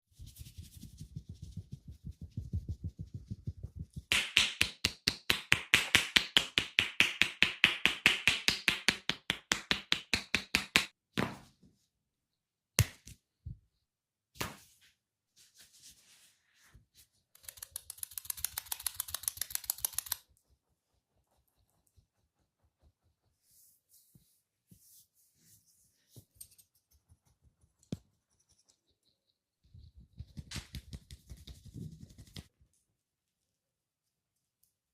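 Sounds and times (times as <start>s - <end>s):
hands slapping on body: 3.7s - 11.4s, 12.8s - 13.2s, 14.4s - 14.7s, 30.2s - 32.5s.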